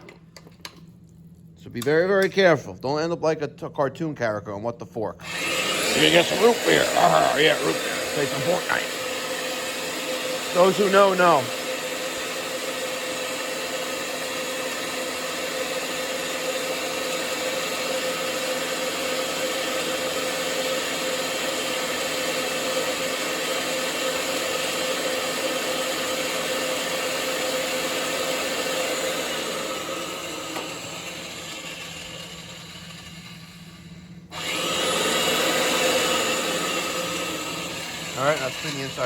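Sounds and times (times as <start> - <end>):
pipe-threading machine humming: 5.2 - 14.7, 22.9 - 39.0.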